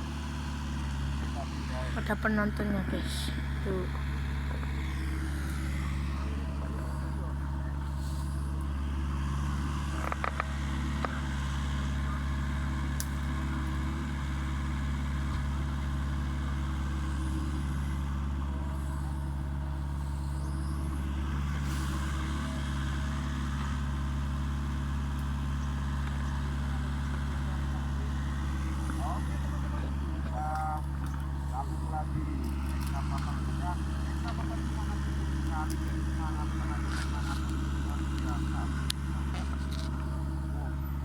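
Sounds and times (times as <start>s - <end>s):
diesel engine running: 0.0s - 41.0s.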